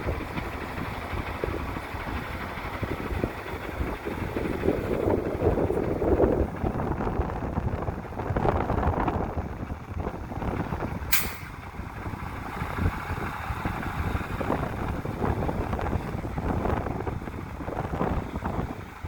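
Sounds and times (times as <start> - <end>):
low uneven rumble: 0.0 - 19.0
wind buffeting microphone: 0.0 - 19.0
short sharp hiss: 11.1 - 11.7.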